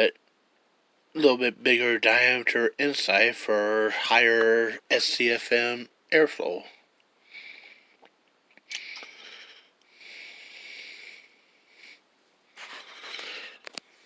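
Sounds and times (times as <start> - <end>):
speech: 1.2 - 6.8
soft breaths: 6.6 - 14.0.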